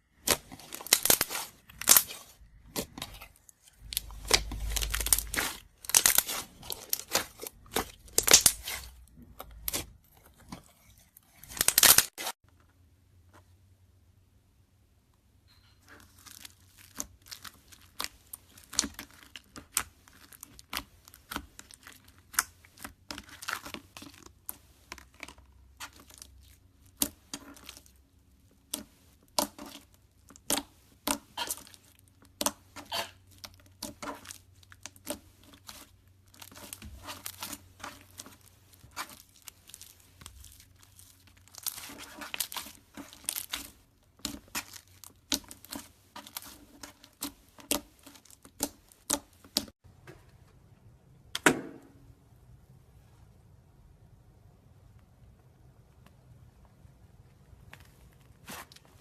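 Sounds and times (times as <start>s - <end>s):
slime squeezed and stretched: 0.2s - 12.3s, 28.7s - 49.7s.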